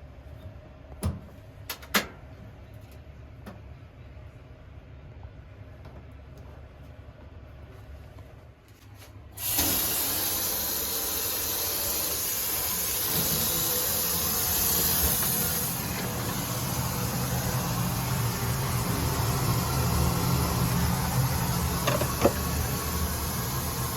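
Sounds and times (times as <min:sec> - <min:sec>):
faucet water running: 0:09.4 - 0:23.9.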